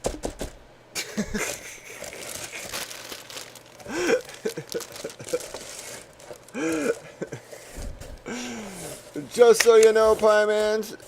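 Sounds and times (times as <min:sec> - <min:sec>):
packaging crinkling and rustling: 0:01.4 - 0:08.2.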